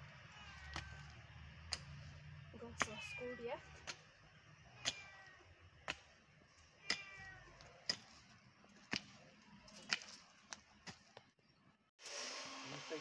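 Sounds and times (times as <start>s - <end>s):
cat meowing: 4.8s - 5.5s, 6.8s - 7.6s.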